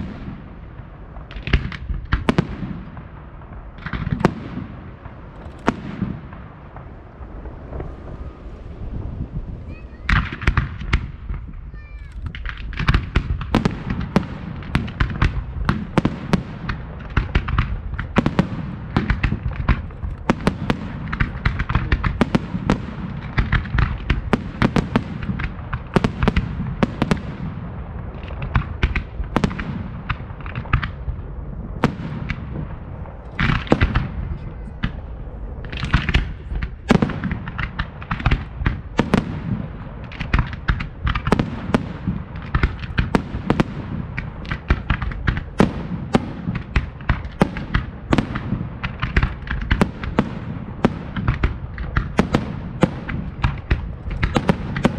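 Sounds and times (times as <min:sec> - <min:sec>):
fireworks bangs and crackling: 0:00.0 - 0:54.9
heavy low rumble: 0:03.2 - 0:13.5, 0:30.0 - 0:41.3.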